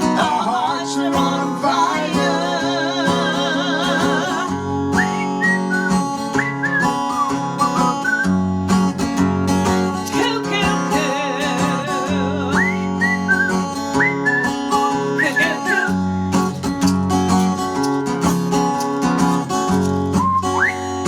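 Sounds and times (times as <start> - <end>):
bird-like whistles: 4.9 - 8.4, 12.6 - 16.0, 20.2 - 21.0.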